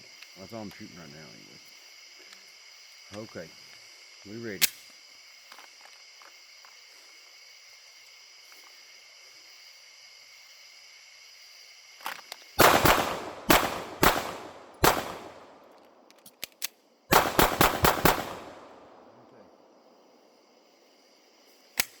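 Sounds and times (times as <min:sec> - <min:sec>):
pistol shots echoing: 0:12.6 - 0:15.8, 0:17.1 - 0:19.1.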